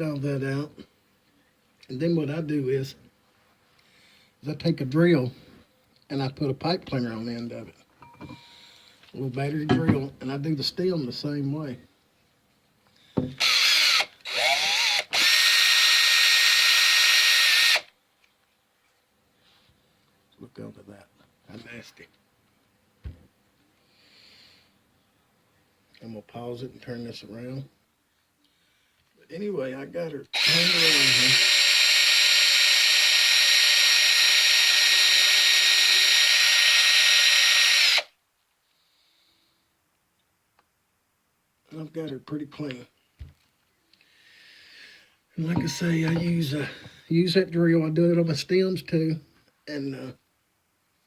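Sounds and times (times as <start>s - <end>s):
cordless drill spinning: 13.2s - 18.0s, 30.4s - 38.1s, 45.4s - 46.4s.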